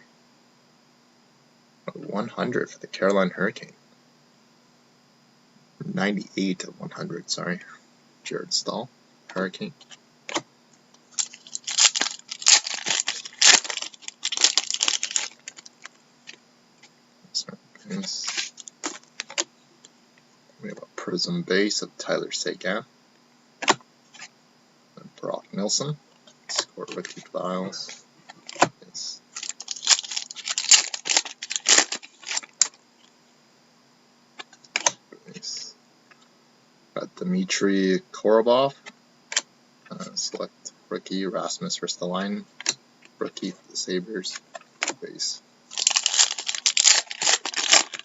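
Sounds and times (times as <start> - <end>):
card pack wrapper crinkling and tearing: 11.1 - 16.0, 18.0 - 19.4, 26.5 - 27.9, 29.3 - 32.8, 45.7 - 48.0.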